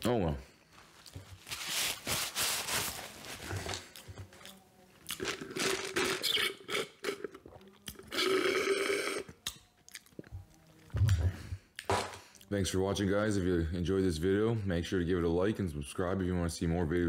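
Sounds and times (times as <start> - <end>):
drawn-out pitched mouth sounds: 5.1 - 11.9
chewing and crunching: 9.3 - 11.2.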